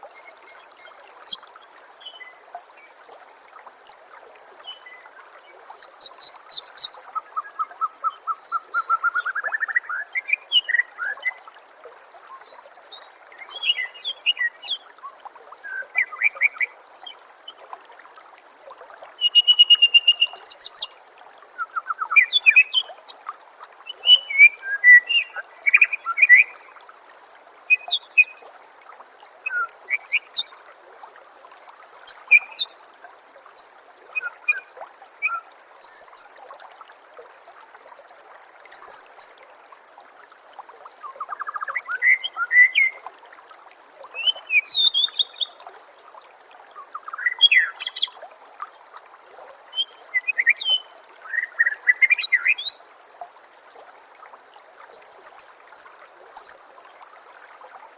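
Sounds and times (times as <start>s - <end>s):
trickle of running water: 0.0s - 57.9s.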